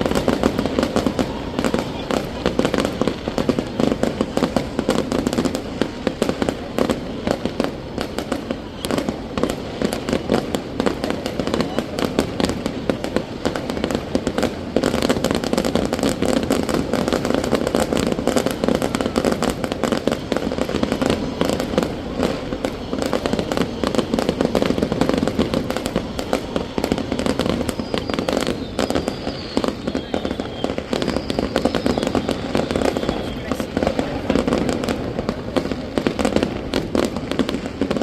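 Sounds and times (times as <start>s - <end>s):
fireworks bangs and pops: 0.0s - 38.0s
faint falling whistle: 27.7s - 33.5s.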